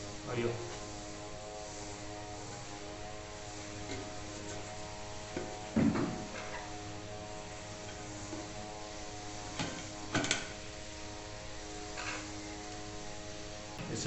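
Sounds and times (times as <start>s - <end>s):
steady background hum: 0.0s - 14.0s.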